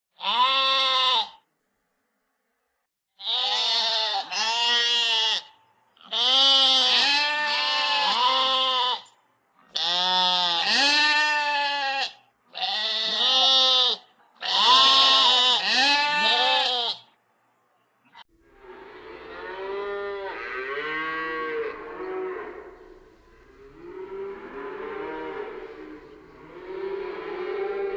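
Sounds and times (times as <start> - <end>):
farm animal bleating: 0.2 - 1.4, 3.2 - 17.1, 19.3 - 23.0.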